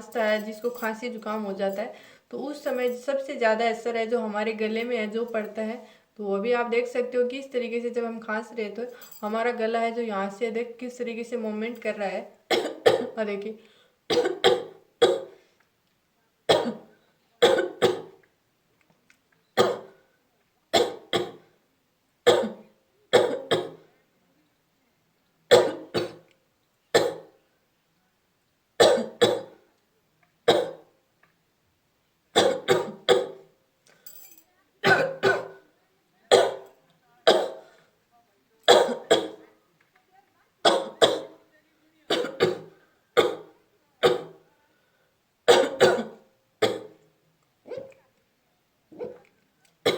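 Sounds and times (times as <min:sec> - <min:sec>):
person coughing deliberately: 0:12.5 - 0:13.2, 0:14.1 - 0:15.4, 0:22.3 - 0:23.9, 0:25.5 - 0:26.2, 0:28.8 - 0:29.6, 0:30.5 - 0:30.8, 0:32.4 - 0:33.4, 0:34.8 - 0:35.6, 0:36.3 - 0:36.7, 0:38.7 - 0:39.4, 0:40.7 - 0:41.4, 0:42.1 - 0:44.4, 0:45.5 - 0:47.0.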